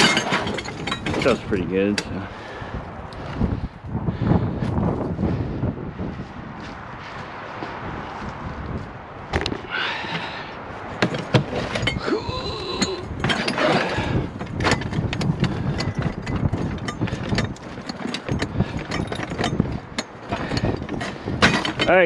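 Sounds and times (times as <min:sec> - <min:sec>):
scrap metal clinking and rattling: 0:00.0 - 0:02.3, 0:11.0 - 0:22.0.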